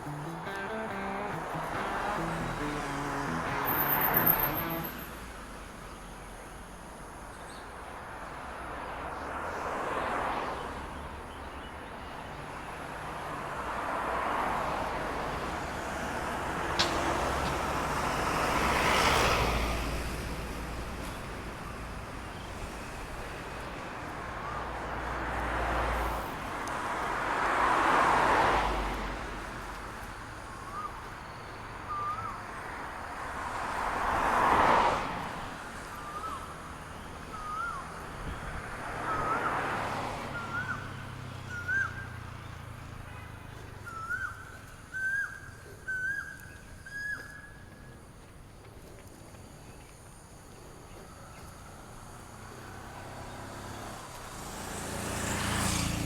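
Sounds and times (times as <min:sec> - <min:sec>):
road traffic passing: 0:00.0 - 0:56.0
sharp click: 0:16.8 - 0:17.6.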